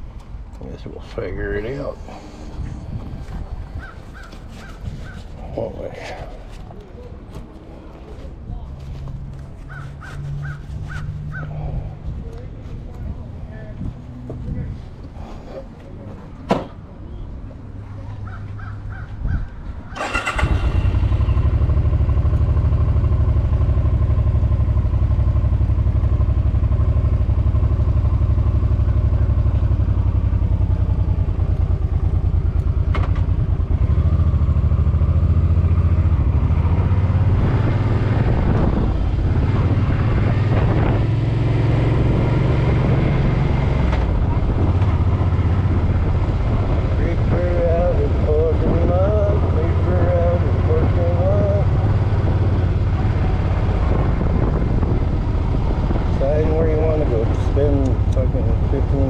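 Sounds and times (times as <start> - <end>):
motorcycle engine starting and running: 19.9 - 59.0.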